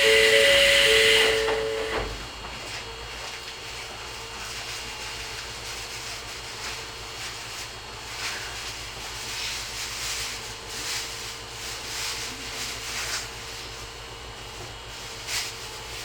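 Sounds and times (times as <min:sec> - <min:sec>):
compressed air hiss: 0:00.0 - 0:02.0
two steady tones: 0:00.0 - 0:02.2
low hum of standing train: 0:00.0 - 0:16.0.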